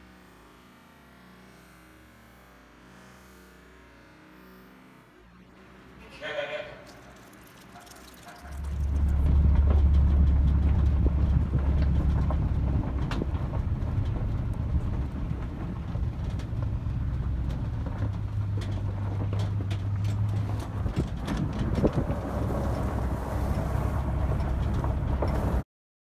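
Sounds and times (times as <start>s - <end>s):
motor vehicle rumbling: 5.3s - 25.6s
rattles: 6.8s - 25.6s.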